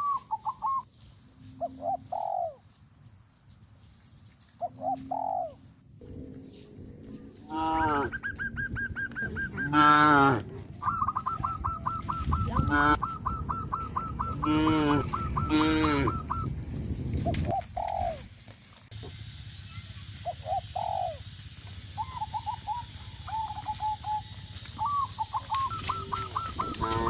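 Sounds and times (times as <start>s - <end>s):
farmyard birds calling: 0.0s - 18.3s, 18.9s - 27.0s
loud honk-like calls: 9.4s - 10.4s, 11.0s - 16.4s, 25.3s - 27.0s.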